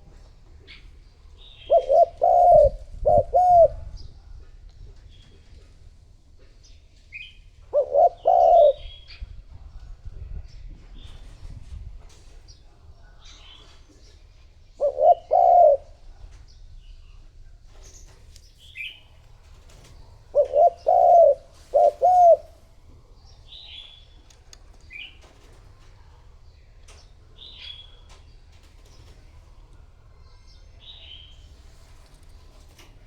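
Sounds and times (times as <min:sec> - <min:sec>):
small birds chirping: 0:00.1 - 0:11.4, 0:12.2 - 0:33.0
dove cooing: 0:01.5 - 0:04.0, 0:07.6 - 0:09.2, 0:14.8 - 0:16.2, 0:19.7 - 0:22.8.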